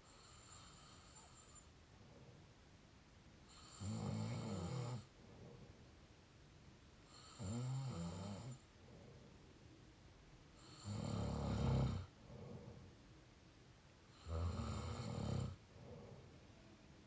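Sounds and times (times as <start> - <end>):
person snoring: 3.5 - 5.1, 7.1 - 8.6, 10.6 - 12.8, 14.1 - 16.2.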